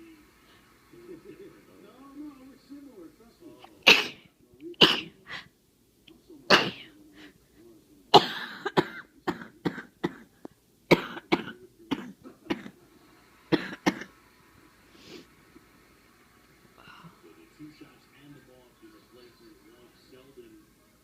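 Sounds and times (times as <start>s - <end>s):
person coughing harshly: 3.8s - 4.2s, 4.8s - 5.2s, 6.5s - 6.9s, 8.1s - 12.8s.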